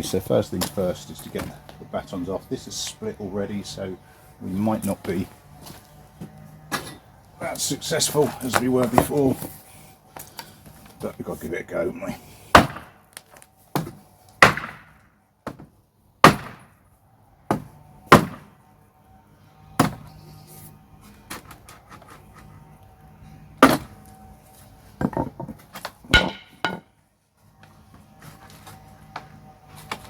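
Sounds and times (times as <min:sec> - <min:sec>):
hammer striking wood: 0:12.6 - 0:13.0, 0:13.7 - 0:16.7, 0:17.5 - 0:18.5, 0:23.6 - 0:23.9, 0:25.0 - 0:26.9.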